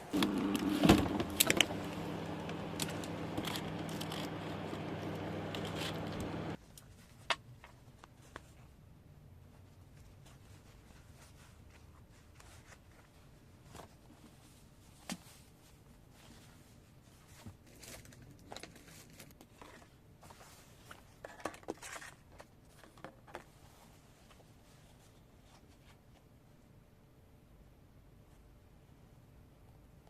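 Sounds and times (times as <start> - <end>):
scratchy rustling: 0.1 - 6.6.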